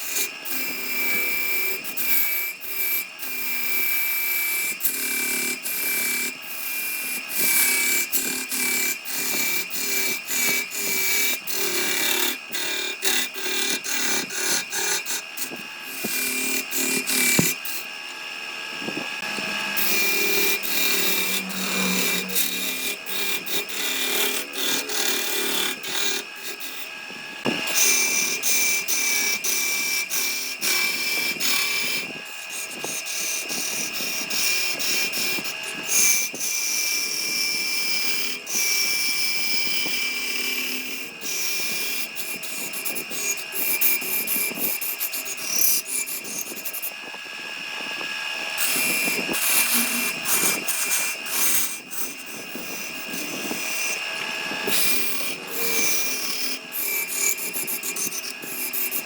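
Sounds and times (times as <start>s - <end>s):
power tool motor whine: 0.0s - 59.0s
clicks and scraping from cutting: 48.6s - 59.0s.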